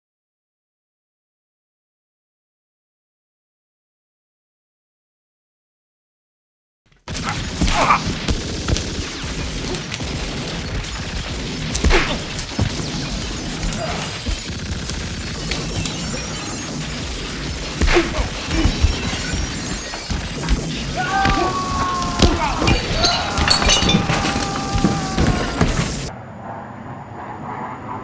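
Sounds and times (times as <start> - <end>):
continuous clatter and rumble: 7.0 - 26.1
sharp crashing impacts: 7.1 - 26.1.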